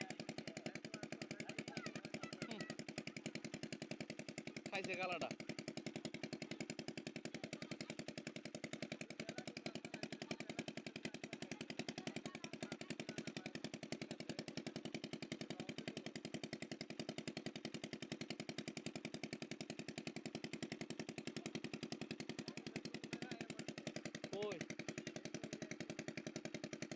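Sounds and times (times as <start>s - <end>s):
small engine chugging: 0.0s - 26.9s.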